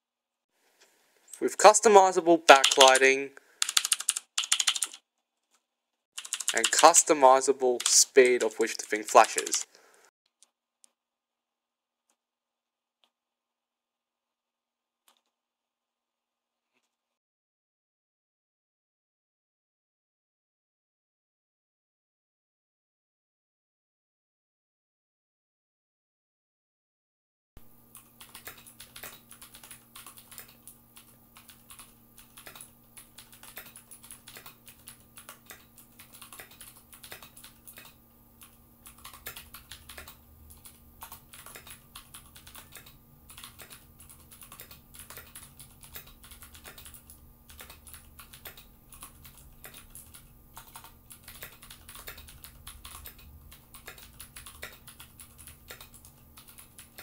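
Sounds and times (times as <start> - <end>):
mechanical keyboard typing: 1.6 - 5.0, 6.2 - 9.8, 27.9 - 57.0
faint steady hum: 6.3 - 10.1, 27.6 - 57.0.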